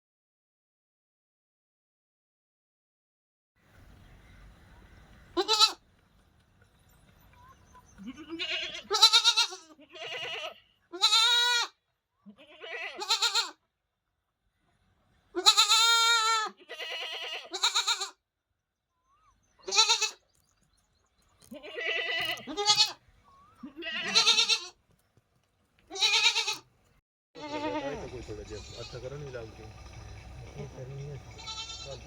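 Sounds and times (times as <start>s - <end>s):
goat bleating: 5.4s - 5.8s, 7.9s - 13.6s, 15.4s - 18.2s, 19.6s - 20.2s, 21.4s - 24.8s, 25.9s - 26.7s, 27.4s - 29.2s, 31.2s - 32.0s.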